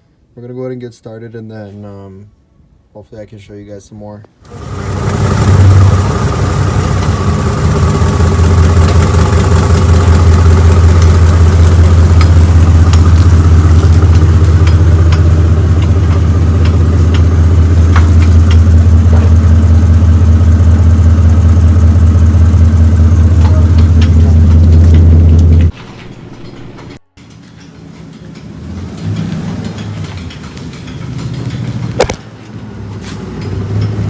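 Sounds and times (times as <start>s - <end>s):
machine low hum: 4.5s - 27.0s.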